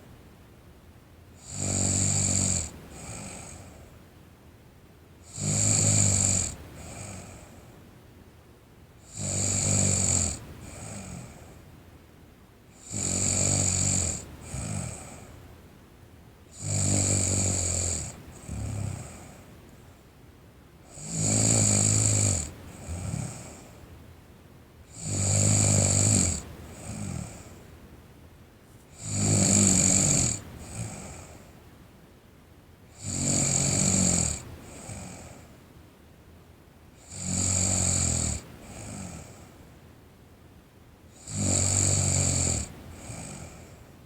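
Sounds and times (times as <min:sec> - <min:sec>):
person snoring: 0:05.3 - 0:07.4, 0:09.1 - 0:11.5, 0:12.8 - 0:15.3, 0:16.6 - 0:19.4, 0:20.9 - 0:23.7, 0:24.9 - 0:27.5, 0:28.9 - 0:31.4, 0:33.0 - 0:35.4, 0:41.2 - 0:43.7.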